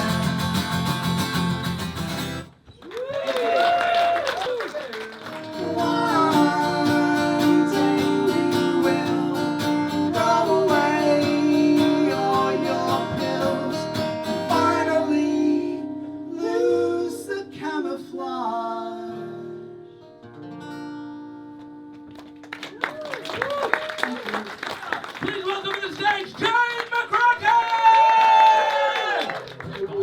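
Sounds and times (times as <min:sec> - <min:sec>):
person singing: 0:00.0 - 0:00.6, 0:05.6 - 0:19.8
strummed acoustic guitar: 0:00.0 - 0:02.6, 0:05.3 - 0:17.8, 0:18.9 - 0:22.4.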